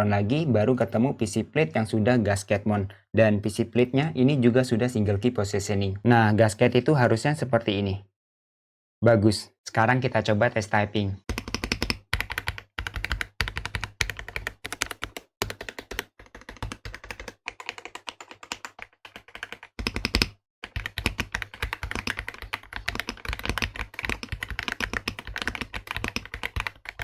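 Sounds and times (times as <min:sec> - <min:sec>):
mechanical keyboard typing: 0:11.3 - 0:27.0.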